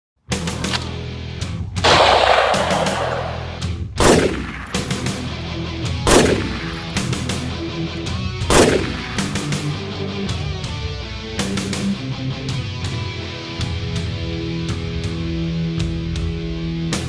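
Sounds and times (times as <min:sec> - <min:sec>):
rock music: 0:00.2 - 0:17.0
rifle shots ringing out: 0:01.8 - 0:05.2, 0:06.1 - 0:07.2, 0:08.5 - 0:09.6.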